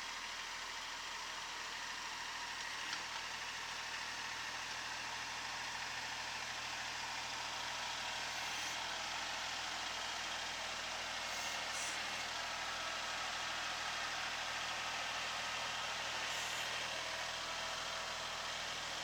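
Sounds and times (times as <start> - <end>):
diesel tractor engine running: 5.9 - 19.0.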